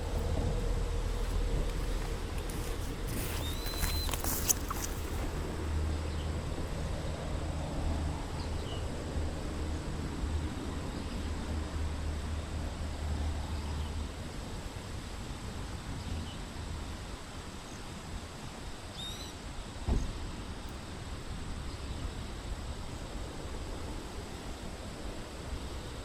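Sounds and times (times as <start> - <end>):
steady low hum: 0.0 - 17.2
bird chirping: 3.2 - 5.2
thump: 19.9 - 20.1.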